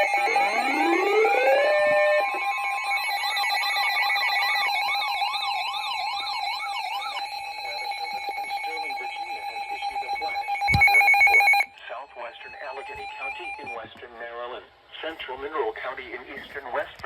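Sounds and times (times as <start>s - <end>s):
siren-like warble: 0.0s - 13.8s
steady electronic alert tone: 7.4s - 11.7s.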